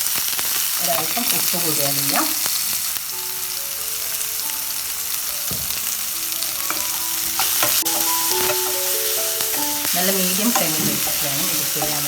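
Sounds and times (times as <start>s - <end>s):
shallots sizzling in oil: 0.0s - 12.0s
soft background music: 3.0s - 12.0s
spoon knocking against pan: 6.6s - 12.0s.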